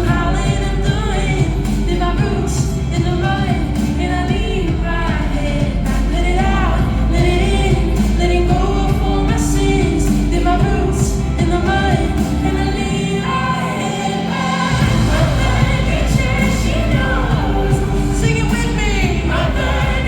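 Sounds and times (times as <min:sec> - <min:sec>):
pop song with female vocal: 0:00.0 - 0:20.0.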